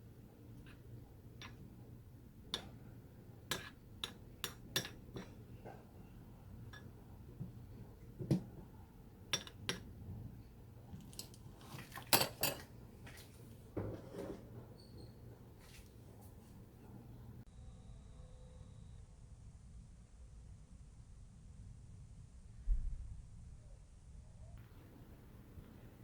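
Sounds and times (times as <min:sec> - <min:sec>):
utensils clinking against dishes: 0:03.5 - 0:05.8, 0:11.1 - 0:12.7.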